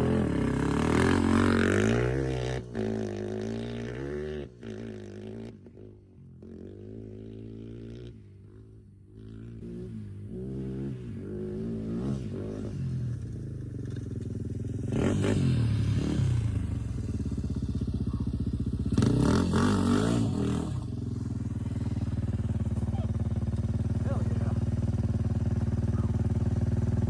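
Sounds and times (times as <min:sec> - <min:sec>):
dirt bike engine revving: 0:00.0 - 0:05.8, 0:14.7 - 0:27.0.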